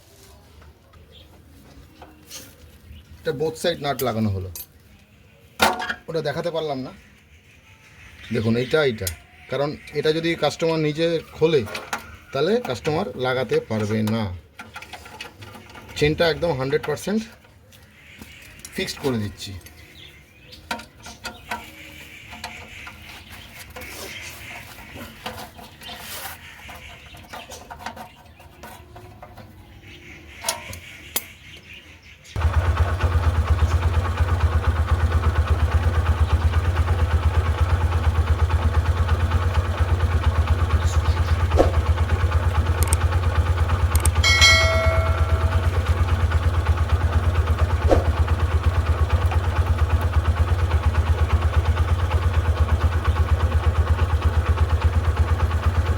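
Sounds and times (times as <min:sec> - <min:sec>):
hand tools clicking and knocking: 0:11.5 - 0:17.6, 0:20.6 - 0:29.6, 0:43.9 - 0:46.2
motorcycle engine idling: 0:32.4 - 0:55.9.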